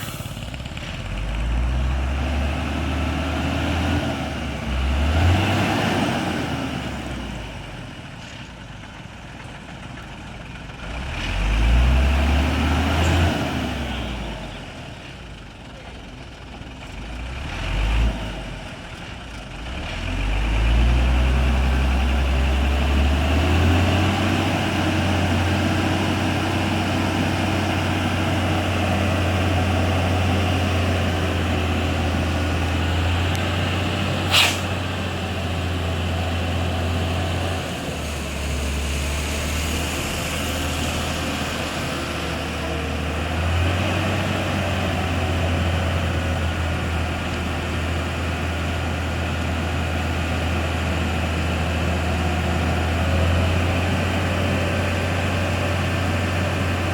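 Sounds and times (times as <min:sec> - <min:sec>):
sharp hiss of air: 0:00.0 - 0:00.5, 0:34.2 - 0:35.0
diesel truck engine running: 0:00.0 - 0:56.9.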